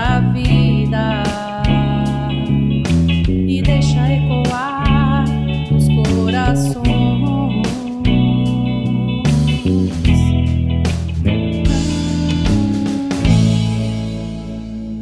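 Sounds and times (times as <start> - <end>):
bass line: 0.0 - 15.0
wavering lead line: 3.5 - 15.0
band playing: 7.6 - 15.0
drum beat: 9.4 - 14.0.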